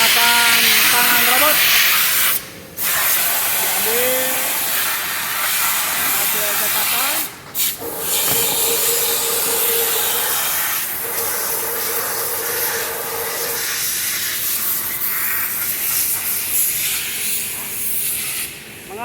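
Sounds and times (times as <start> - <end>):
machine hissing loudly: 0.0 - 18.3
steady hum: 2.3 - 13.8.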